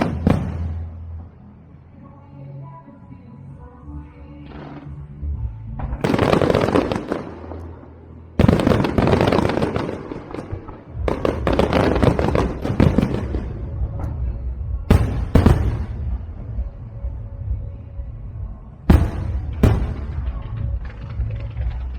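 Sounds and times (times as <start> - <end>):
fireworks bursting: 0.0 - 1.0, 5.9 - 7.7, 8.4 - 16.6, 18.9 - 21.9
fireworks crackling: 8.4 - 14.3, 18.9 - 21.9.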